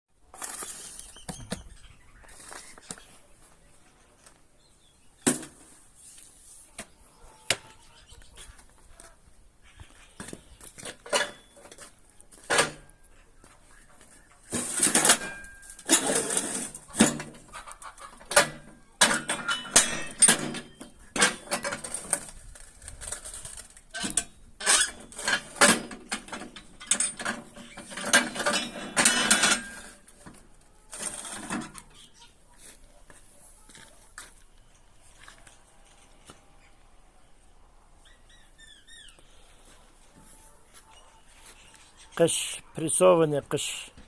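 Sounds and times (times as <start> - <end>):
metal clanks and knocks: 10.9 - 13.0, 14.5 - 17.5, 18.2 - 22.3, 23.9 - 31.9
metal scraping: 14.4 - 32.2.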